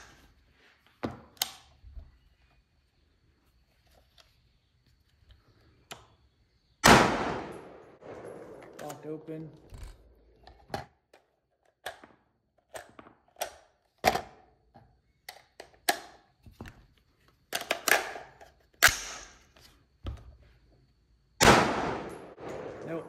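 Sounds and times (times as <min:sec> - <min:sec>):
rifle shots: 0:06.8 - 0:09.1, 0:21.4 - 0:23.0.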